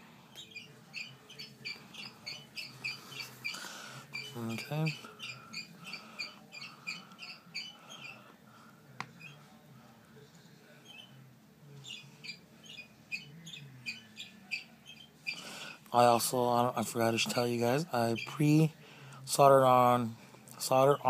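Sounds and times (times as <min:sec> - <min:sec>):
small animal chirping: 0:00.4 - 0:08.2, 0:11.8 - 0:15.4.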